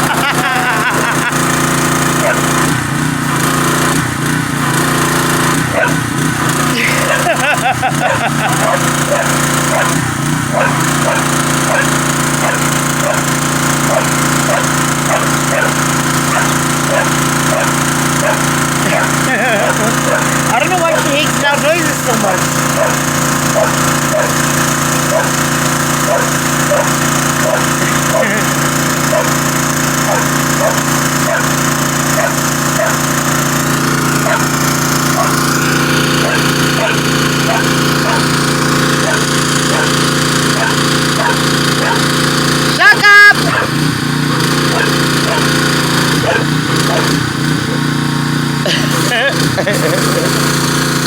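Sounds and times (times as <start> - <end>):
loud motor running: 0.0 - 51.0
dog barking: 2.2 - 2.8, 5.7 - 6.1, 6.8 - 21.4, 22.3 - 29.4, 30.0 - 33.2, 34.2 - 35.4, 36.2 - 38.4, 39.0 - 42.2, 43.4 - 43.8, 44.7 - 45.6, 46.2 - 47.9.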